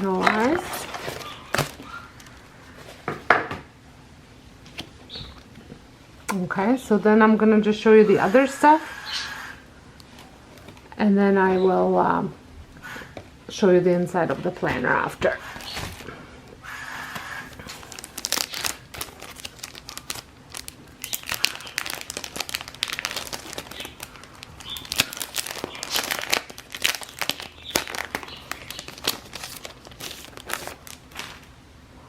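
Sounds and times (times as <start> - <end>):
packaging crinkling and rustling: 0.0 - 3.1, 14.4 - 16.2, 17.0 - 31.6.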